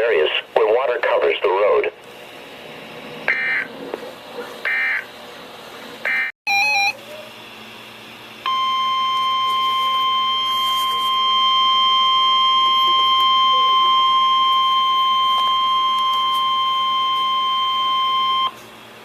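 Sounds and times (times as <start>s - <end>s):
steady warning alarm tone: 3.2s - 3.7s, 4.7s - 5.2s, 6.0s - 7.0s, 8.4s - 18.6s
digital data squawks: 3.3s - 3.7s.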